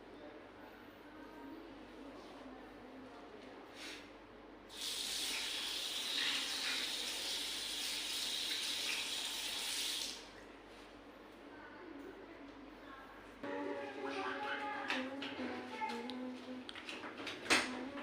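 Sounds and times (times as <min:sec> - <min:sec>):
water running from sink tap: 0:04.7 - 0:10.2.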